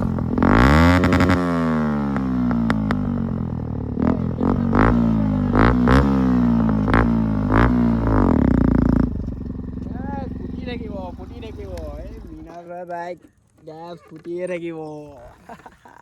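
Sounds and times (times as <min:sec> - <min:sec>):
motorcycle engine revving: 0:00.0 - 0:12.6
exhaust pops and crackles: 0:00.0 - 0:15.7.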